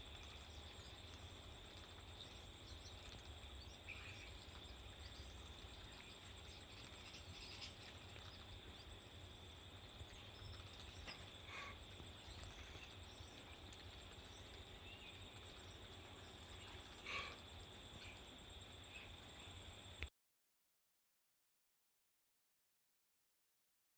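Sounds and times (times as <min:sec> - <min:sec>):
bird chirps: 0:02.2 - 0:08.9.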